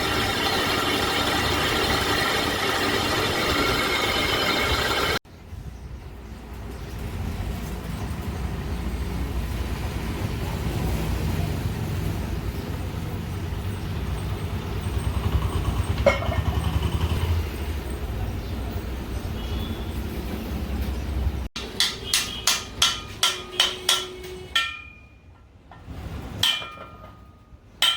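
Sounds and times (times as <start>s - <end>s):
machine rumbling: 0.0s - 5.2s, 14.2s - 18.0s.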